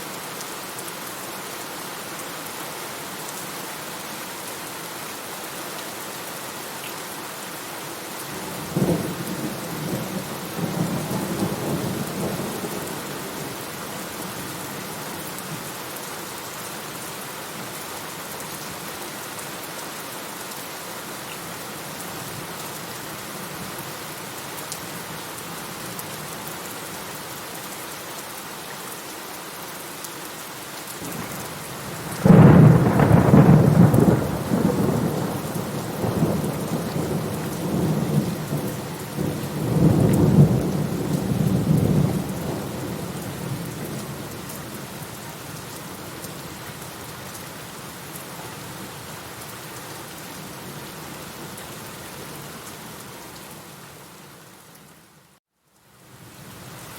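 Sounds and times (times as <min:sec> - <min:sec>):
steady rain falling: 0:00.0 - 0:56.9
thunder cracking and rumbling: 0:32.1 - 0:38.6.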